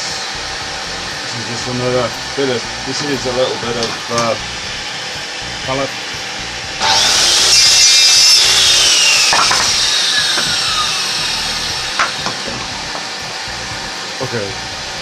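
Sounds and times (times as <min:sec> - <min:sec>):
circular saw cutting wood: 0:00.0 - 0:15.0.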